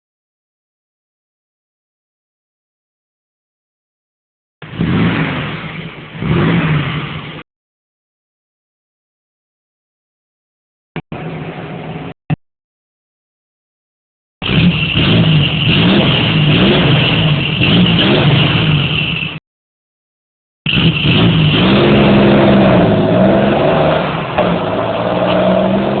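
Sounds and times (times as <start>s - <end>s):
engine revving: 4.6s - 7.4s, 14.4s - 19.4s, 20.7s - 26.0s.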